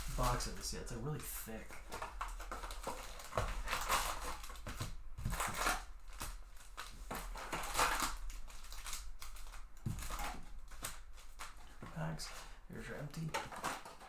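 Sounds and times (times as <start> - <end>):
cellophane wrap crinkling: 0.0 - 14.0.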